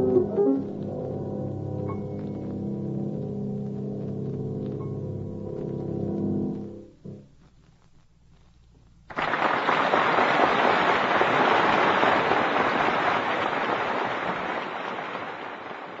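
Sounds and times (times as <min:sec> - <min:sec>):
audience applauding: 0:09.1 - 0:16.0.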